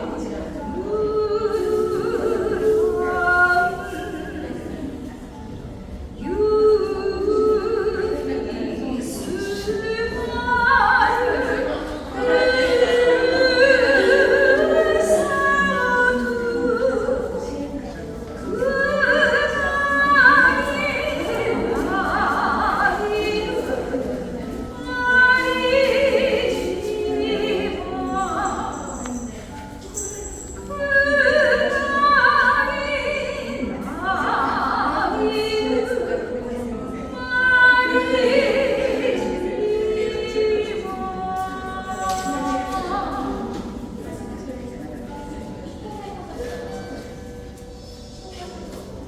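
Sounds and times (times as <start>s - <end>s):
person singing long notes with vibrato: 6.2s - 17.6s, 18.3s - 44.3s.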